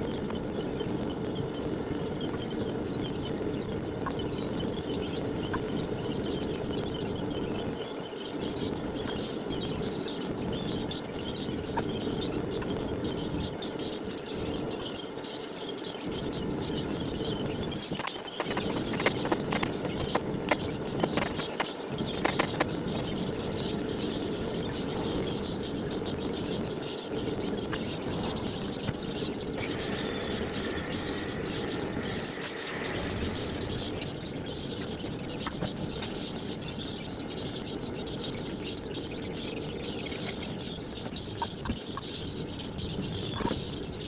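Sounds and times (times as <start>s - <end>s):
furnace burners roaring: 0.0s - 40.7s
sharp clicks: 17.9s - 23.0s.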